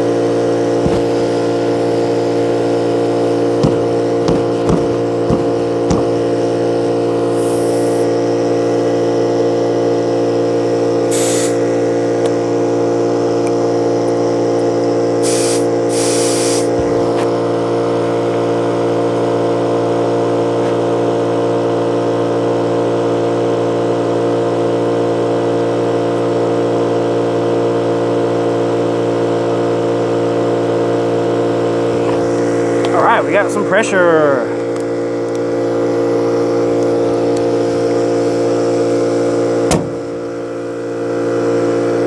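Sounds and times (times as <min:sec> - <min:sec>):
air compressor motor running: 0:00.0 - 0:19.2, 0:34.4 - 0:42.0
air hissing bursts: 0:00.8 - 0:06.4, 0:07.2 - 0:08.1, 0:11.1 - 0:11.6, 0:15.2 - 0:17.1.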